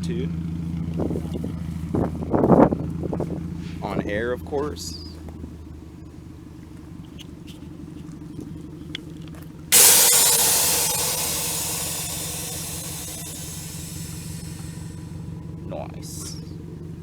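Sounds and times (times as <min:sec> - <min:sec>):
air suspension hissing: 0:09.8 - 0:15.1
car engine idling: 0:09.8 - 0:15.2.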